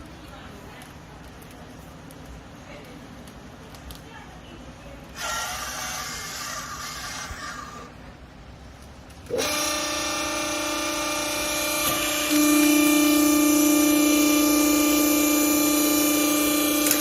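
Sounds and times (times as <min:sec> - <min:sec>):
hydraulic pump motor whining: 0:05.2 - 0:07.9, 0:09.2 - 0:17.0.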